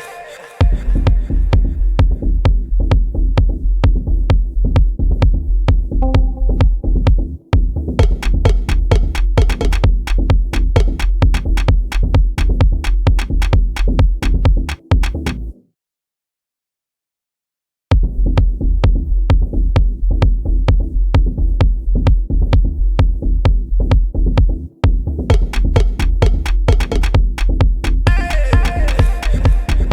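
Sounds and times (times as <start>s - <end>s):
sub-bass kick drum: 0.6s - 15.4s, 17.9s - 29.9s
rapid sharp high ticks: 8.0s - 15.4s, 25.3s - 29.9s.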